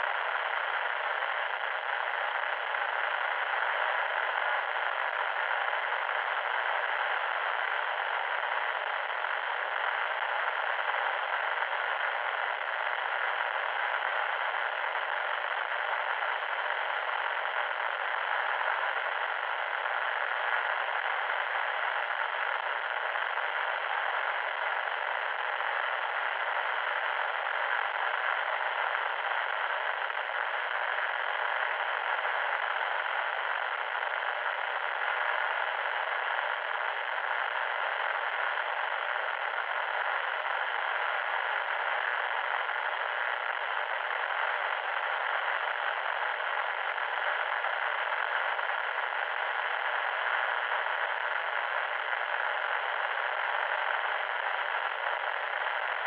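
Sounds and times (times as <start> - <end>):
electronic static hiss: 0.0 - 56.0.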